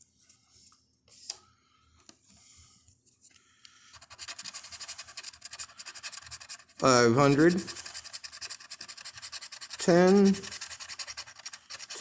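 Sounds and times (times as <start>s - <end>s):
scratch-off ticket being scratched: 3.9s - 12.0s.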